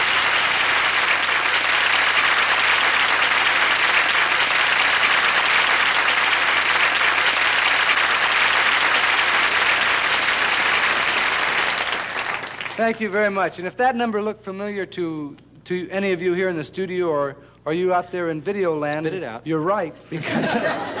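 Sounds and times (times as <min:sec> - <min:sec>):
audience applauding: 0:00.0 - 0:13.1.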